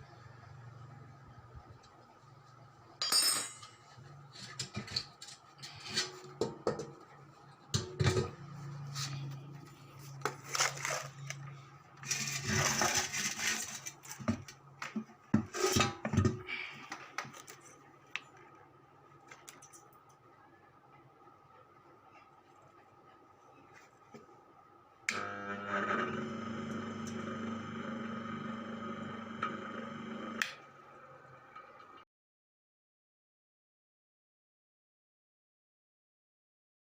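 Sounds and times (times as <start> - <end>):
metal tools clinking: 3.0 - 3.8.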